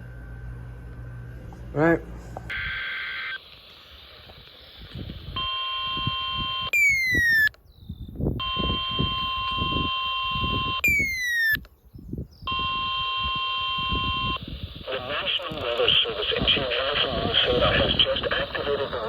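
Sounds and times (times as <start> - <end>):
electronic alert siren: 5.2 - 7.6, 8.4 - 11.7, 12.5 - 14.7.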